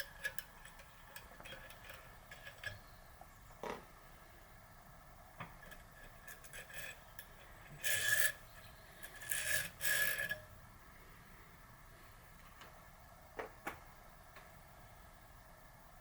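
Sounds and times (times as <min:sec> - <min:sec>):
metal scraping on metal: 0:00.0 - 0:03.4, 0:05.4 - 0:10.8.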